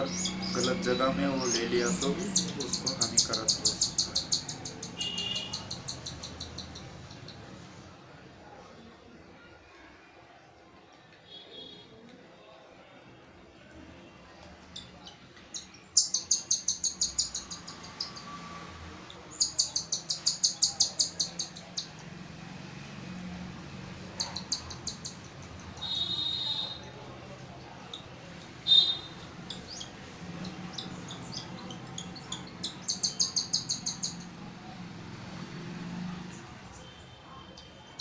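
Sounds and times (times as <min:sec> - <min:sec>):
chick squeaks: 0:24.1 - 0:26.8.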